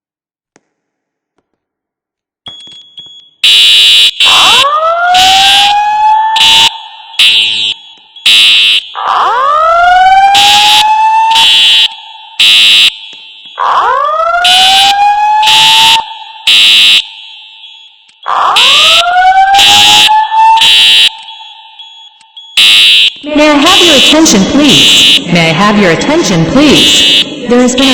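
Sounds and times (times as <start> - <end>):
fire alarm horn blasts: 3.4 - 27.9
rising whoop alarm tone: 4.2 - 12.9, 13.6 - 17.0, 18.2 - 21.9.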